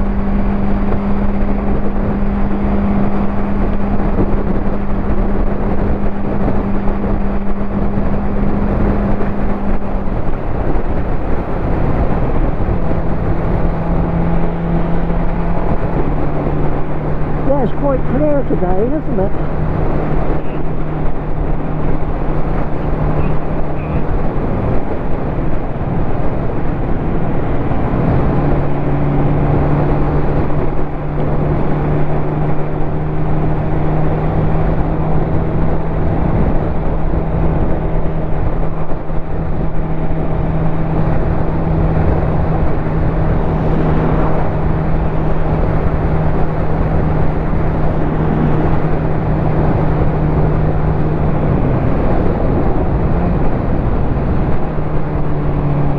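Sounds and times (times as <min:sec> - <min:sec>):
motorcycle engine cruising: 0:00.0 - 0:55.9
ride noise rushing: 0:35.6 - 0:55.3.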